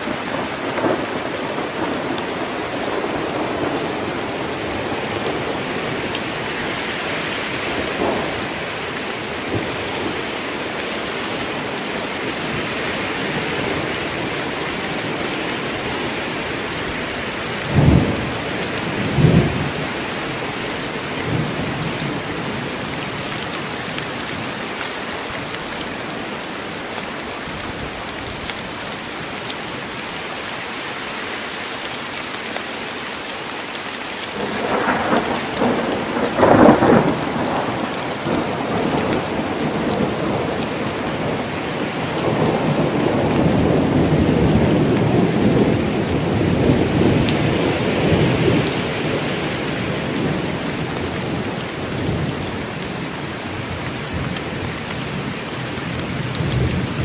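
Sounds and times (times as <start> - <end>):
thunder rumbles: 0.0 - 23.2, 34.4 - 52.9
heavy rain in forest: 0.0 - 57.0.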